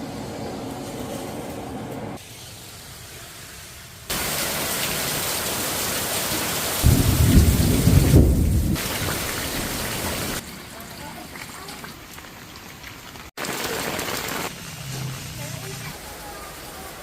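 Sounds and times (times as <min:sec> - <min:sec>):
heavy rain hissing: 0:02.2 - 0:10.4, 0:13.4 - 0:17.0
loud low rumble: 0:06.9 - 0:08.8.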